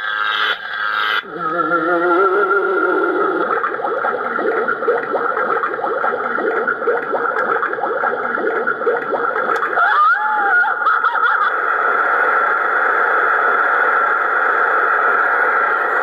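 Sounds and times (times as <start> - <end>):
constant tone: 0.1 - 9.9.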